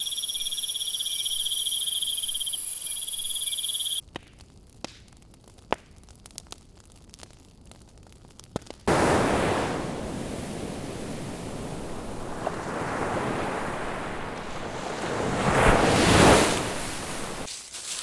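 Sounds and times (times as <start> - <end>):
breaking wave: 8.9 - 17.5
ocean waves washing in: 8.9 - 17.5.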